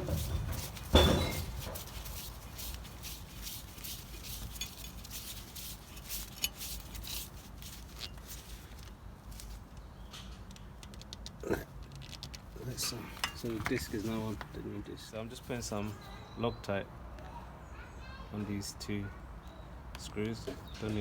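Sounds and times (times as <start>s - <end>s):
tools and metal parts clicking: 0.0s - 14.4s.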